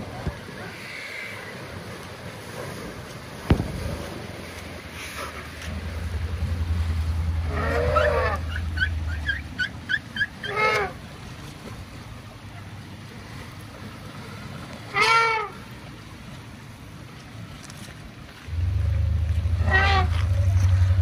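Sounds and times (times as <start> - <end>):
low rumbling: 3.5 - 9.9, 18.5 - 21.0
elephant trumpeting call: 7.3 - 11.0, 19.4 - 20.7.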